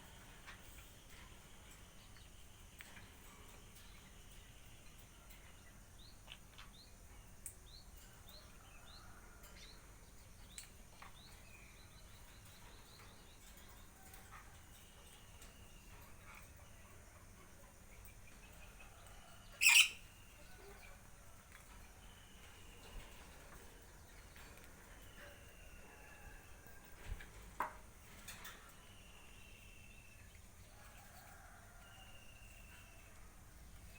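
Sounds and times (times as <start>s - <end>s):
faint bird chirping: 0.0s - 33.9s
low background noise: 0.0s - 33.9s.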